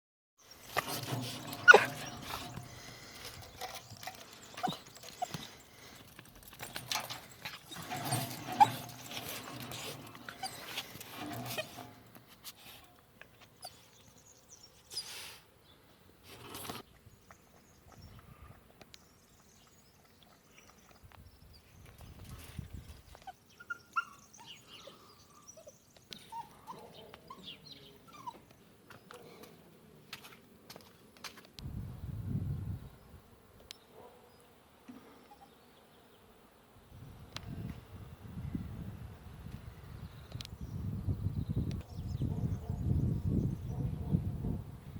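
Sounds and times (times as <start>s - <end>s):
dog making short sounds: 1.5s - 2.6s
dog whimpering: 1.5s - 2.6s, 4.6s - 5.4s, 10.2s - 10.8s.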